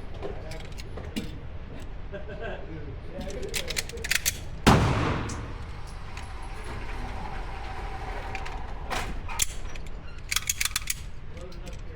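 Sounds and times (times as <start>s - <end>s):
low background noise: 0.0s - 11.9s
sharp mechanical clicks: 3.2s - 5.9s, 9.3s - 11.9s
gunshot tail: 4.6s - 5.6s.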